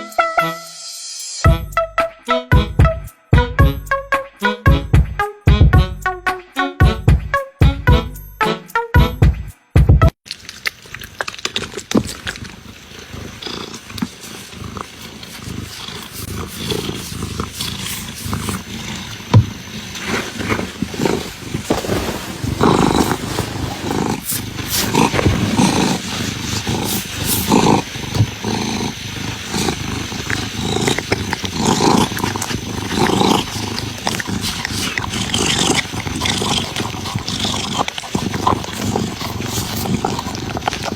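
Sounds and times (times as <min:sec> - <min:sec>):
scuffling clicks: 0:10.3 - 0:40.9
kittens vocalizing: 0:10.8 - 0:40.9.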